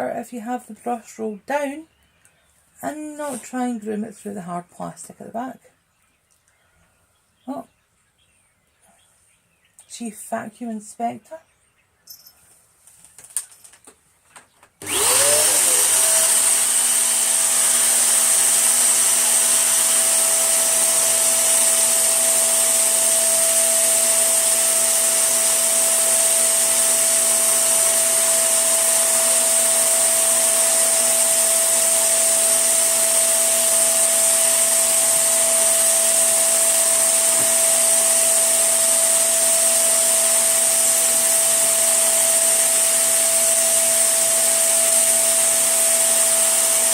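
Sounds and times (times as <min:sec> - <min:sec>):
upright vacuum cleaner motor whine: 0:14.8 - 0:46.9.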